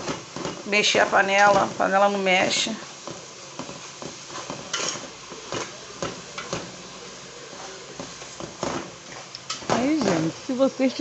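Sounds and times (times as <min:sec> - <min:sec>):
utensil scraping a thin pan: 0:03.6 - 0:05.8.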